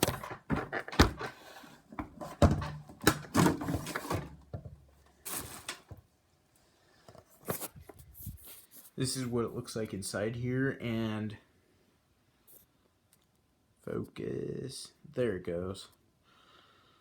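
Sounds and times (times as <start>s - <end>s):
handling noise knocks and scrapes: 0.0s - 6.0s.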